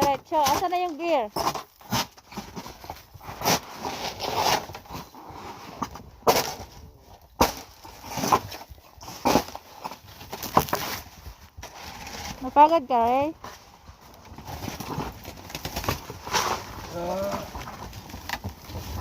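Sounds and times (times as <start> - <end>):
tool scraping hard-packed snow: 3.3 - 6.6.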